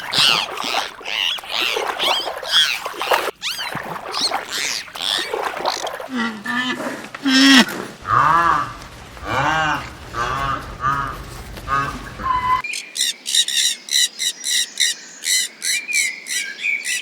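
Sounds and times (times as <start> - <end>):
animal rising and falling cries: 0.0 - 6.1
low deep animal calls: 0.0 - 12.6.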